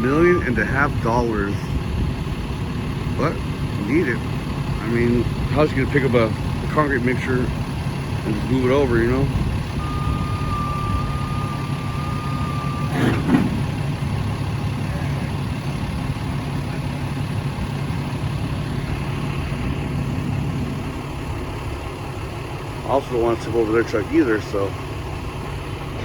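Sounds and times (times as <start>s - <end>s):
diesel engine running: 0.0s - 26.0s
steady high tone: 9.8s - 13.0s.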